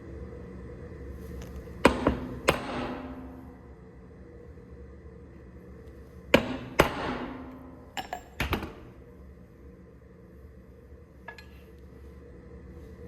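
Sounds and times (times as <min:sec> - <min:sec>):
hammer striking metal: 0:06.4 - 0:08.8.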